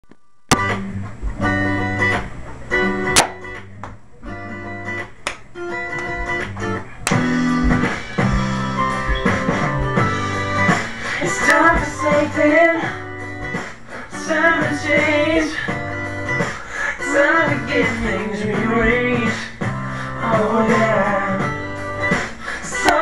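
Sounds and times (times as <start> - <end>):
bass line: 0.5 - 16.5, 17.1 - 22.2
guitar chords: 0.5 - 23.0.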